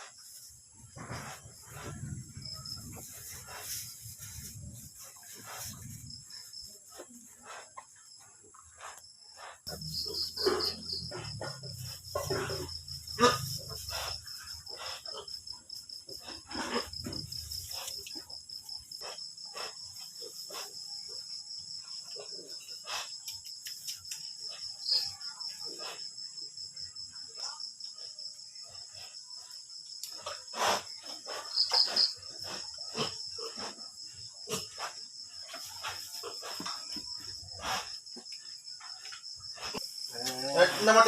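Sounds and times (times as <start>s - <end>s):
insect trilling: 8.8s - 15.3s, 31.3s - 33.1s.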